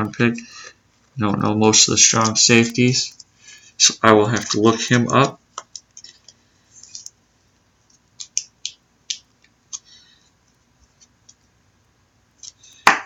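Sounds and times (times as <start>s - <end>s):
cards clicking and rustling: 1.3s - 3.3s, 4.2s - 7.2s, 7.8s - 10.2s, 12.4s - 13.0s.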